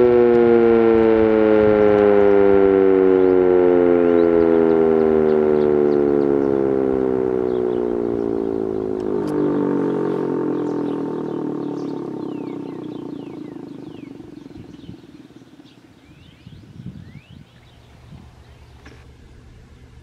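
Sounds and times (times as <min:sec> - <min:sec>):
warning siren winding down: 0:00.0 - 0:16.6
bird chirps: 0:04.0 - 0:19.1.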